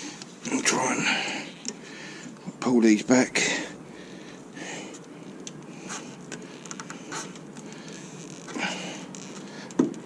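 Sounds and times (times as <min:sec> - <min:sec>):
grips clicking and scraping: 0:04.9 - 0:10.0.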